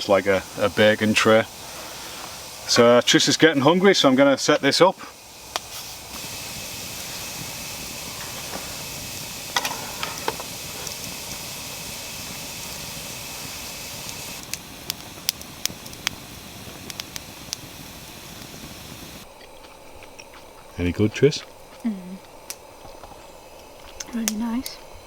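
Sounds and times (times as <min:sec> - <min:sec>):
pressure lantern hissing: 0:00.0 - 0:25.0.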